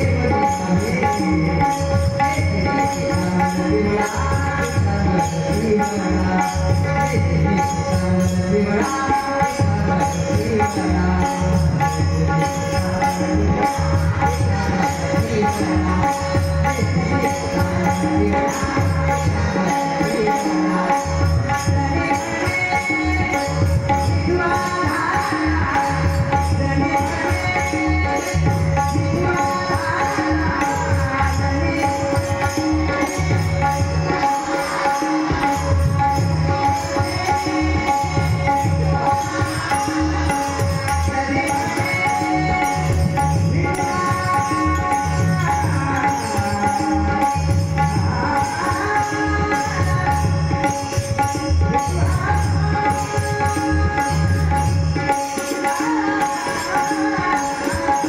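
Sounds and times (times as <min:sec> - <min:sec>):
tabla rhythm: 0:00.0 - 0:58.0.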